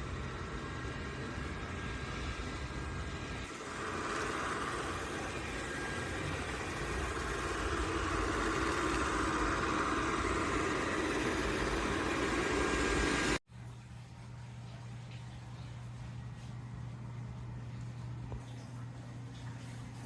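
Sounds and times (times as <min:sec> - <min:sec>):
robot vacuum whirring: 0:03.5 - 0:13.4.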